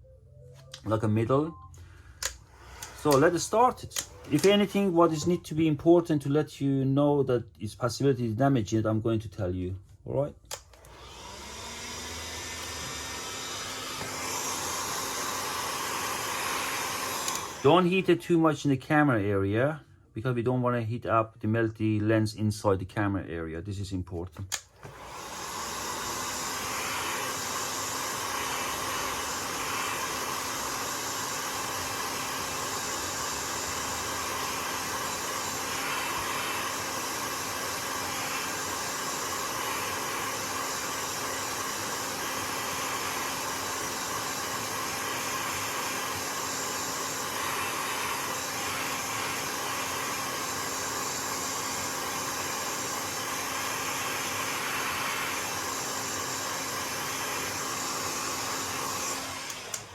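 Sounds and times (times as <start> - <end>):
hot air gun blowing: 2.1 - 5.3, 10.6 - 18.0, 24.5 - 59.9.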